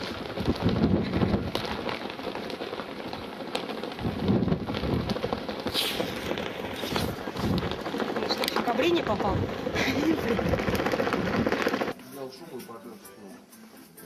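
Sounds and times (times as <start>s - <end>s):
wind on microphone: 0.0s - 2.0s, 4.0s - 11.9s.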